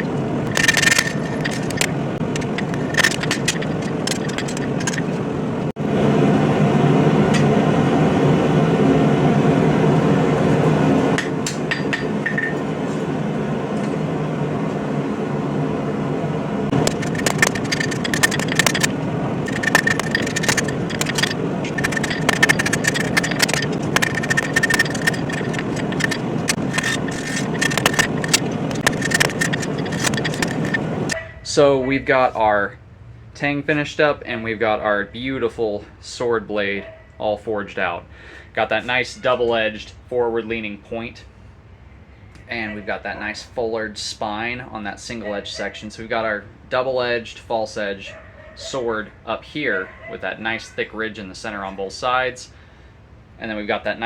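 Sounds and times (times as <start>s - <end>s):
steady rushing noise: 0.0s - 31.2s
anvil ringing: 11.2s - 12.7s.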